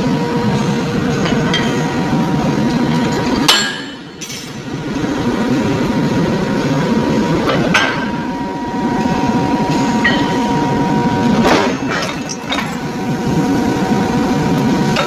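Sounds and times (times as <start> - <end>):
steady machine hum: 0.0 - 15.0
metal ringing tone: 8.2 - 12.9.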